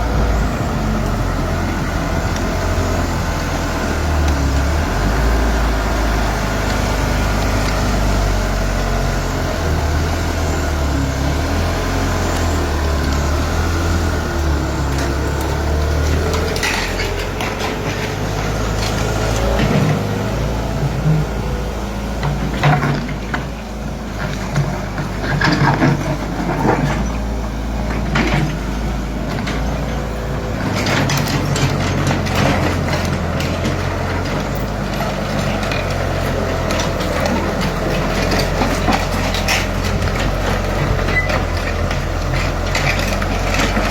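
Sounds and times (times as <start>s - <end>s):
excavator diesel engine running: 0.0s - 43.9s
knocks and clatter: 14.6s - 21.1s, 22.2s - 43.9s.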